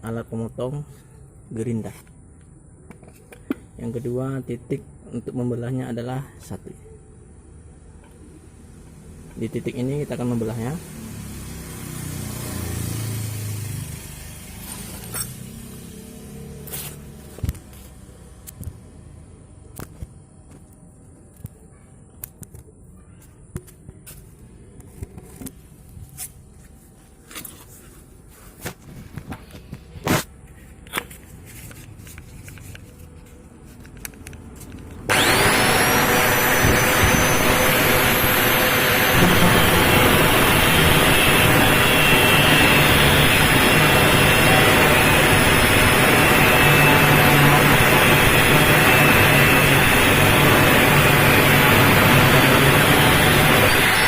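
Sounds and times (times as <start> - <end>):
angle grinder cutting steel: 35.1 - 54.0.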